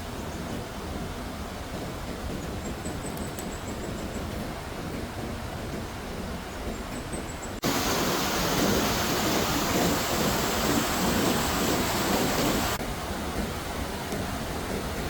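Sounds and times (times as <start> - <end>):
water rushing: 7.6 - 15.0.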